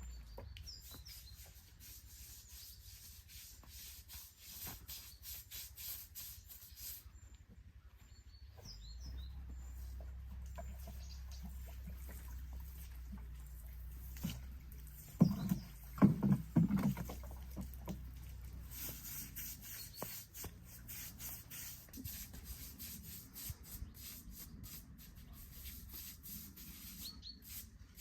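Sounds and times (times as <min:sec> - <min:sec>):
bird chirps: 0:00.0 - 0:01.6, 0:06.4 - 0:11.7, 0:26.8 - 0:27.6
rubbing or scraping strokes: 0:00.8 - 0:07.2, 0:18.6 - 0:28.0.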